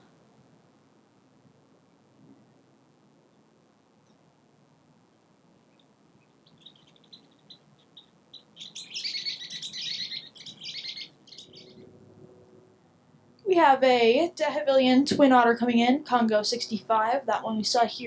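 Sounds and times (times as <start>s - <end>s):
small bird chirping: 5.7s - 11.8s.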